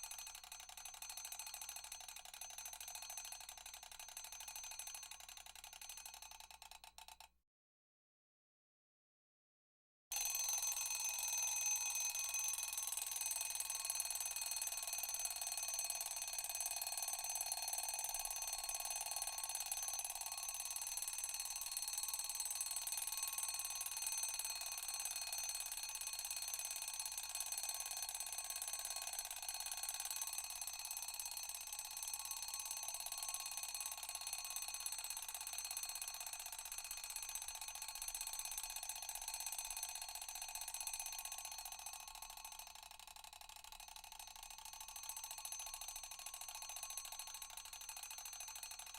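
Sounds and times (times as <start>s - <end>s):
alarm clock bell ringing: 10.1s - 17.2s, 18.3s - 27.9s.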